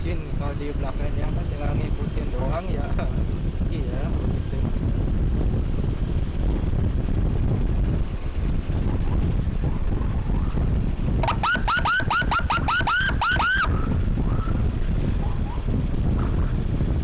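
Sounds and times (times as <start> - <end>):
vehicle noise: 0.0 - 17.0
wind on microphone: 0.0 - 17.0
electronic siren yelping: 11.2 - 14.5.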